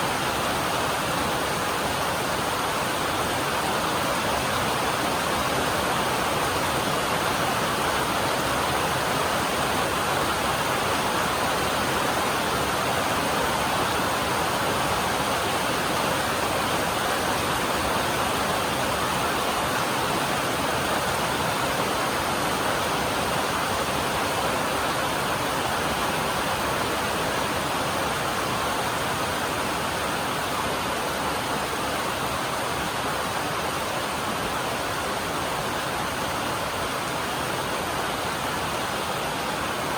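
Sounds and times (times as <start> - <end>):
heavy rain on a metal roof: 0.0 - 39.9.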